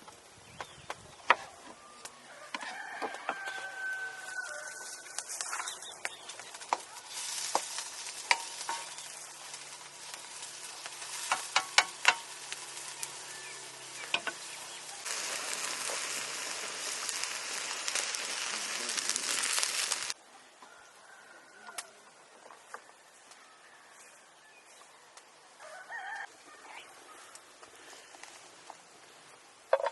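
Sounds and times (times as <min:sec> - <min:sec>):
food sizzling and popping: 0:03.0 - 0:20.2.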